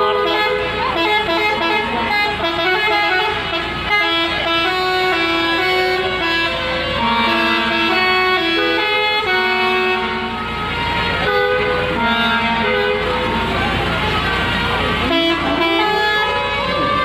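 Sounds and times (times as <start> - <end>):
bus musical air horns playing: 0.0 - 17.0
low engine rumble: 0.0 - 17.0.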